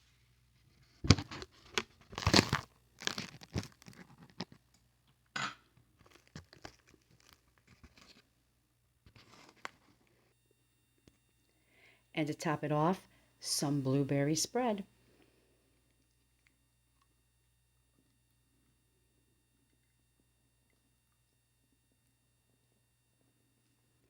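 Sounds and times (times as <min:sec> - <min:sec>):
food packaging crinkling and tearing: 0:01.0 - 0:04.8, 0:05.9 - 0:08.3, 0:09.1 - 0:10.2.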